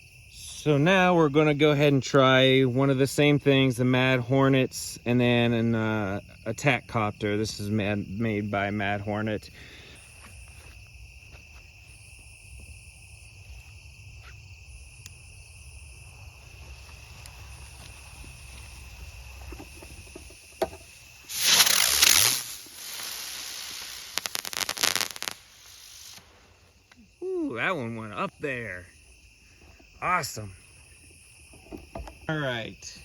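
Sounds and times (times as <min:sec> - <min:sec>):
crickets chirring: 0:00.0 - 0:33.0
firework crackling: 0:16.1 - 0:27.0
firework hissing whoosh: 0:16.6 - 0:26.8.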